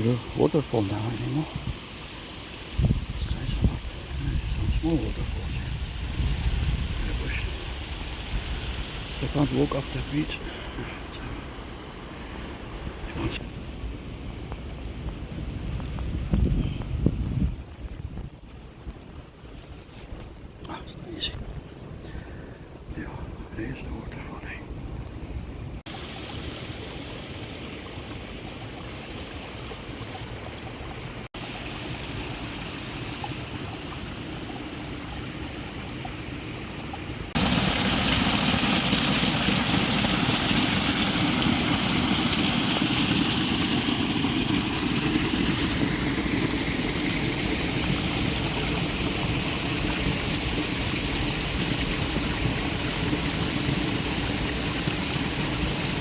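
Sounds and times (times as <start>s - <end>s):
running water rushing: 0.0s - 15.2s, 18.4s - 56.0s.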